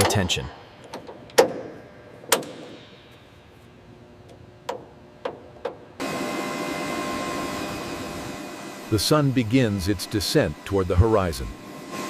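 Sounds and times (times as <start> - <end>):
mechanical hum with whine: 0.0 - 12.0
sharp clicks and knocks: 0.8 - 3.0, 4.3 - 5.9.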